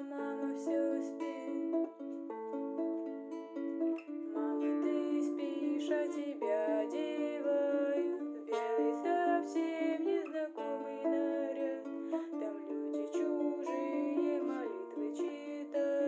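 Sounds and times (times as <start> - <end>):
acoustic guitar playing: 0.9 - 6.8.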